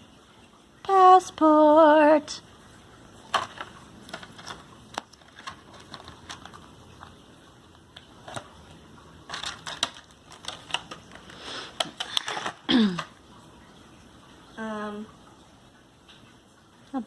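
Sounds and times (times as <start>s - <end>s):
plastic packaging clicks and crinkling: 3.2s - 13.2s.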